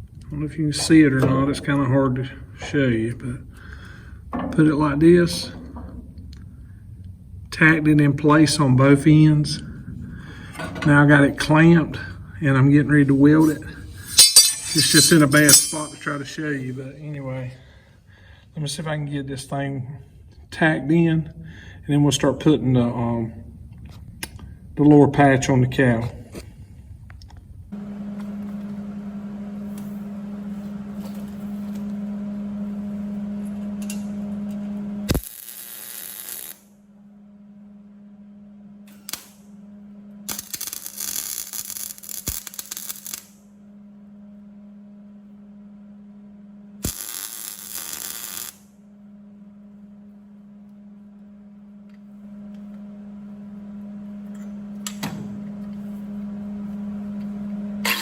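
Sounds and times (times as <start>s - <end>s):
electrical hum: 0.0s - 58.0s
welding arc crackle: 35.1s - 36.7s, 38.9s - 39.4s, 40.3s - 43.5s, 46.8s - 48.7s.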